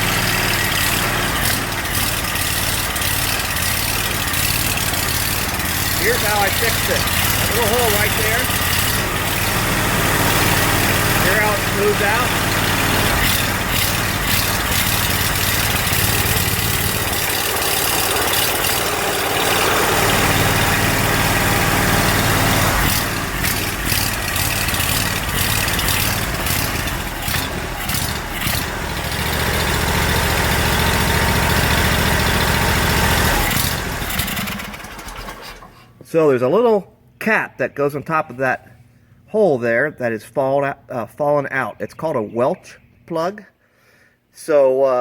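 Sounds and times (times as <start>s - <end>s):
mower engine running: 0.0s - 35.9s.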